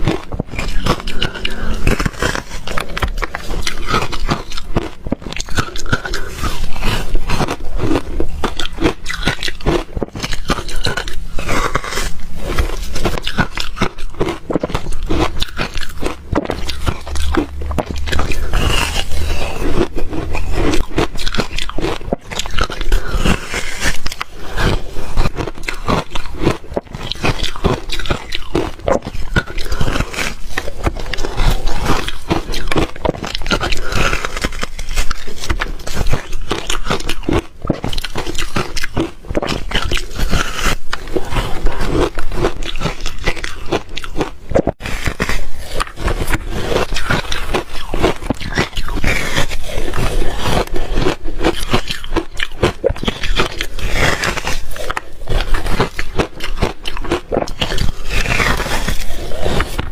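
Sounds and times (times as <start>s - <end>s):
person crunching ice: 0.0s - 59.9s.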